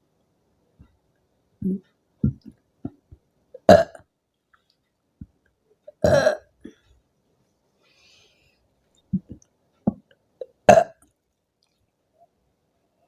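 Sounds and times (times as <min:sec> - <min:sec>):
woman burping: 0:03.6 - 0:04.0, 0:06.0 - 0:06.8, 0:10.4 - 0:11.0.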